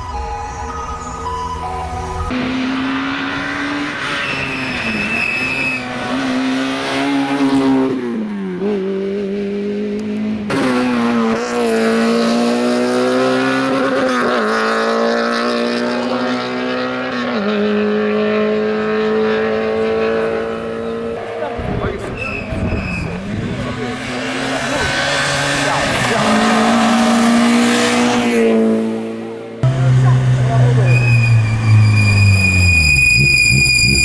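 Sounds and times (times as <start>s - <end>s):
rally car engine revving: 2.2s - 34.0s.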